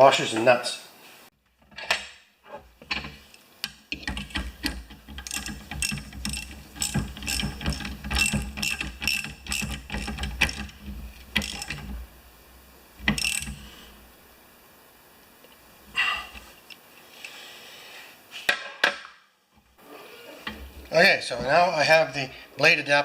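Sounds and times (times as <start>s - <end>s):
ratchet wrench clicking: 5.2s - 10.6s, 13.1s - 13.6s.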